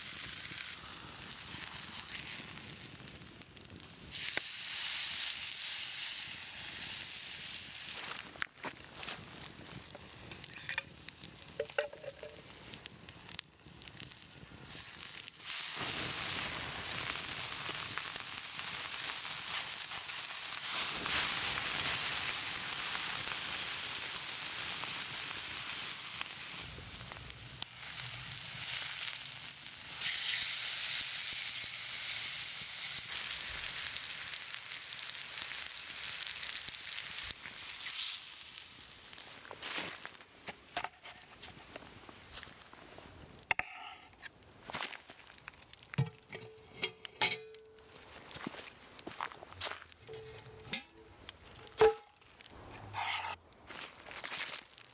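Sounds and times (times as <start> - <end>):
food sizzling on hot stone: 0.0 - 41.6.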